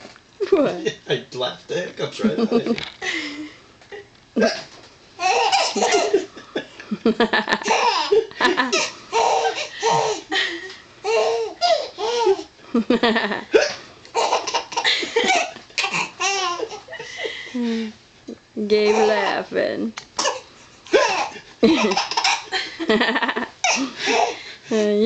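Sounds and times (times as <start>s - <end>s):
baby laughing: 5.2s - 6.3s, 7.5s - 10.3s, 11.0s - 12.5s, 14.1s - 17.1s, 20.2s - 22.6s, 23.6s - 24.4s
baby hiccuping: 20.2s - 20.4s.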